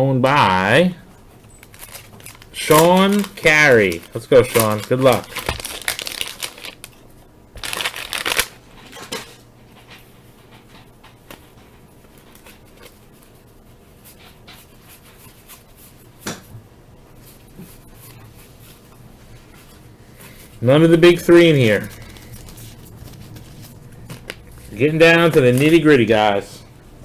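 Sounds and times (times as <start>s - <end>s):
wax paper crinkle: 1.4s - 9.4s, 17.2s - 26.6s.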